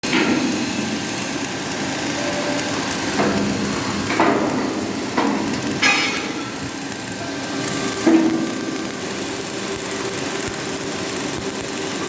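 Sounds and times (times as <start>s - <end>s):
welding arc crackling buzz: 0.0s - 12.0s.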